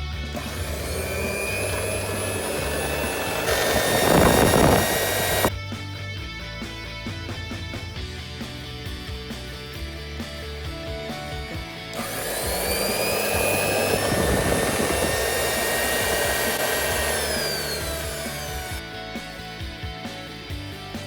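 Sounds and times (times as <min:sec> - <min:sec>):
background music: 0:00.0 - 0:21.0
electric cloth cutter motor whine: 0:00.4 - 0:05.5, 0:12.0 - 0:18.8.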